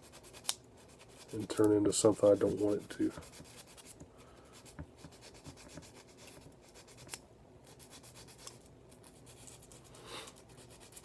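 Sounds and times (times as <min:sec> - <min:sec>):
sanding stick rubbing plastic: 0:00.0 - 0:04.0, 0:04.6 - 0:08.6, 0:10.5 - 0:11.0.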